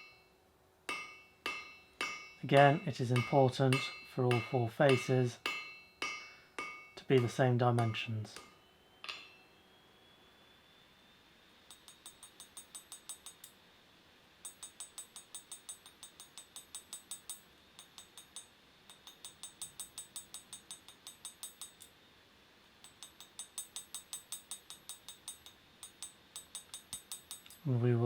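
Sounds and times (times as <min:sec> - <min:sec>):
hammer ringing on anvil: 0:00.9 - 0:09.4, 0:22.8 - 0:27.7.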